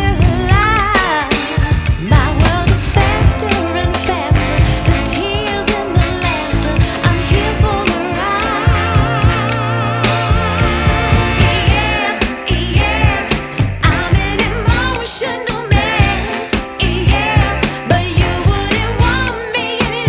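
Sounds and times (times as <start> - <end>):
pop song with singing: 0.0 - 20.0.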